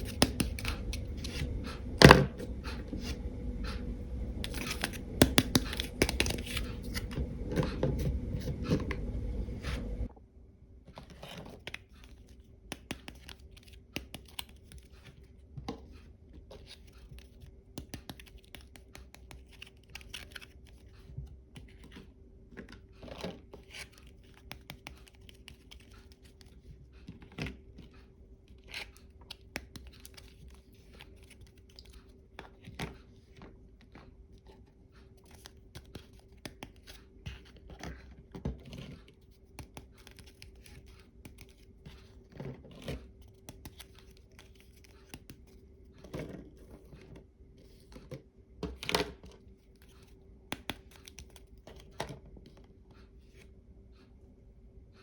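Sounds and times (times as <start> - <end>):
faint steady hum: 0.0 - 10.9.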